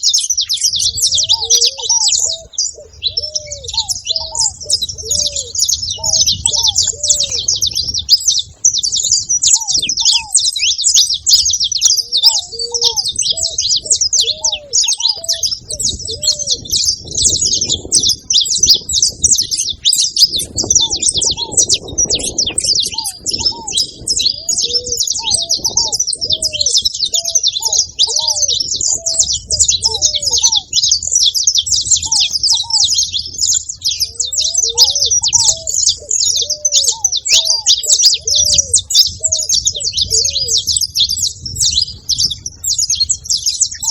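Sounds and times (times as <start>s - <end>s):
finch chirping and twittering: 0.0s - 43.9s.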